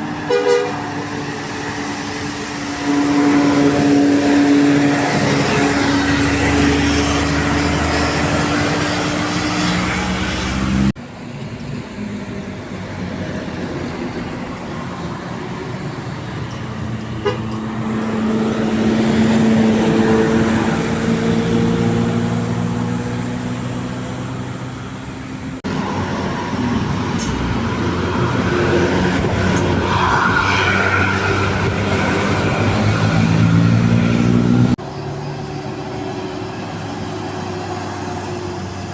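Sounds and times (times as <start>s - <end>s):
vehicle noise: 0.0s - 38.9s
multi-tone bus air horns: 0.2s - 10.4s, 17.1s - 18.7s.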